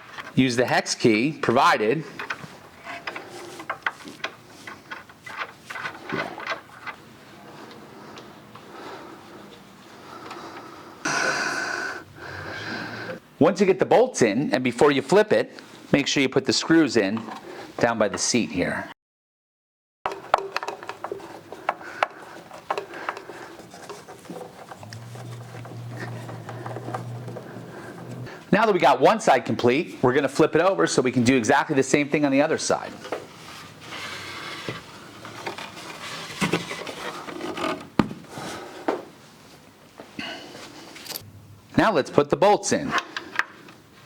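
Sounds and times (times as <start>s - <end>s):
faint scraping and handling: 2.1s - 8.1s, 20.1s - 28.5s, 32.8s - 39.6s
steady low hum: 24.3s - 28.5s.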